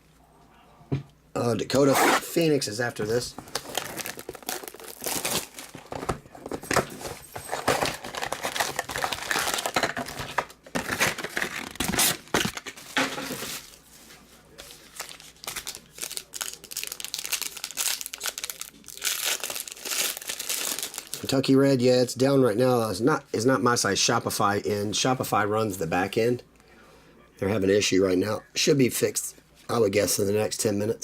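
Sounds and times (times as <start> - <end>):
card pack wrappers tearing and crinkling: 3.1 - 13.7, 14.7 - 21.4.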